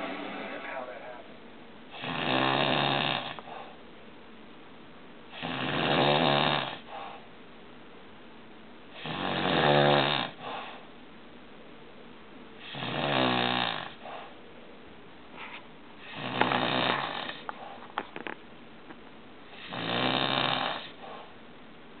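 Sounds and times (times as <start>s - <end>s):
loud rasping snores: 2.0s - 3.6s, 5.3s - 6.9s, 9.0s - 10.6s, 12.6s - 14.0s, 16.0s - 17.5s, 19.6s - 21.0s
quiet breathing: 3.2s - 3.9s, 6.7s - 7.4s, 10.3s - 11.0s, 13.8s - 14.6s, 15.3s - 18.3s, 20.7s - 21.6s.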